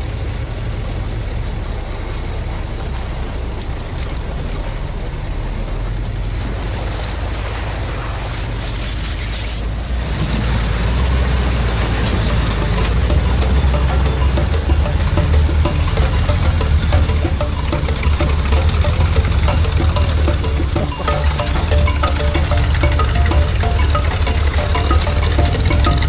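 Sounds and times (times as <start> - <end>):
driving noise: 11.8 - 26.0.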